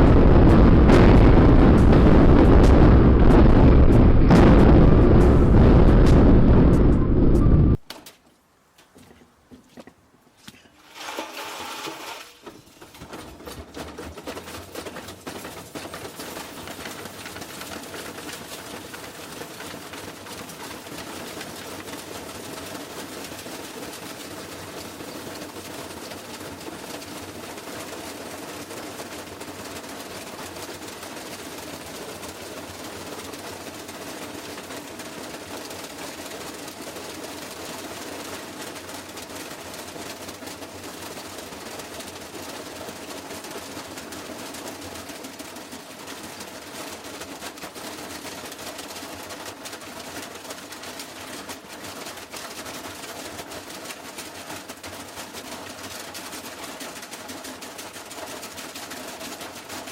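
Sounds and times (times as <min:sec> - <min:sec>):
washing machine whirring: 0:00.0 - 0:07.8.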